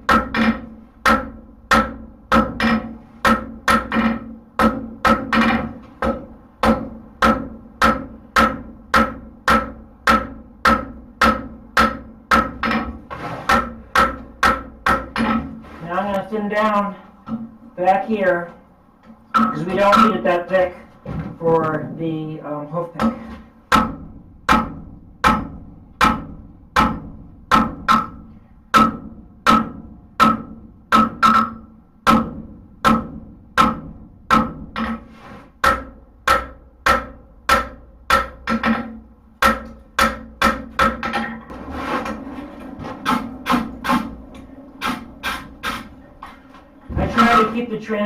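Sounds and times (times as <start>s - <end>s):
hammer striking steel on anvil: 23.7s - 35.0s, 35.6s - 41.3s.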